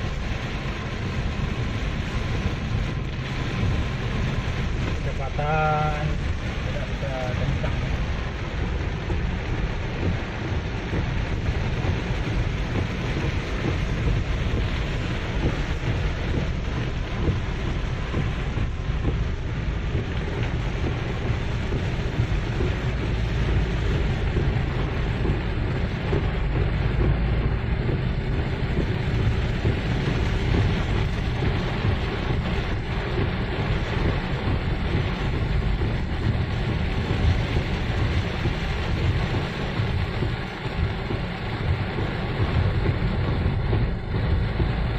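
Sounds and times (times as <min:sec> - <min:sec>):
heavy rain: 0:00.0 - 0:44.9
vehicle driving rumble: 0:00.0 - 0:44.9.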